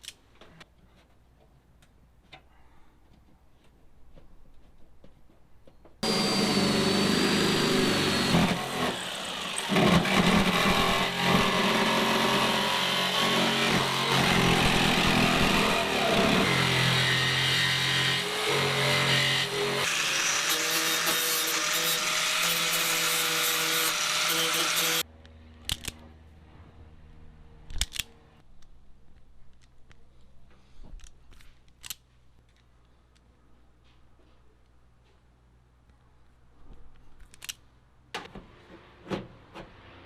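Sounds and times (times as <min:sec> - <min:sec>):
power tool whining: 0:06.0 - 0:25.0.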